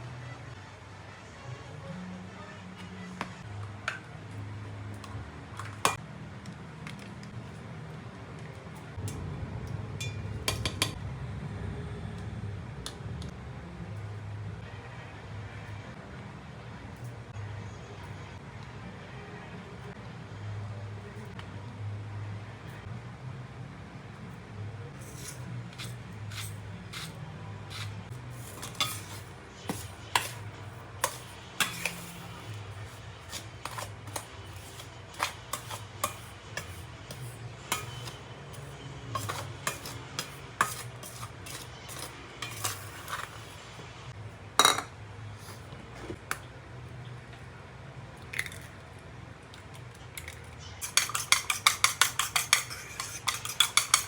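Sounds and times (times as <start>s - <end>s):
dishes and cutlery clinking: 10.0s - 11.0s, 25.0s - 43.6s, 44.6s - 46.4s, 50.2s - 54.0s.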